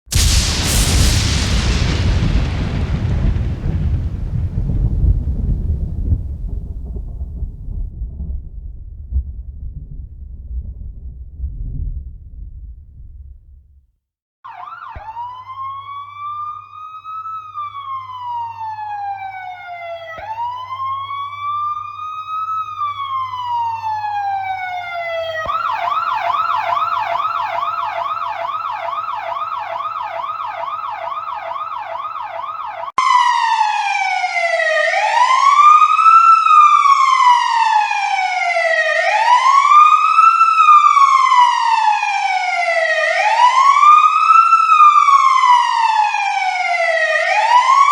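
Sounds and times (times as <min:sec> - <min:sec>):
electronic siren wailing and yelping: 0:14.5 - 0:37.4.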